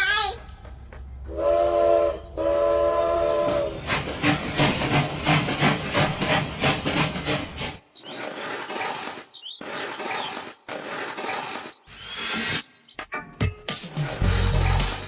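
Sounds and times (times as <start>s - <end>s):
rhythmic train wheel clatter: 0.6s - 11.7s
train horn blasts: 1.3s - 3.8s.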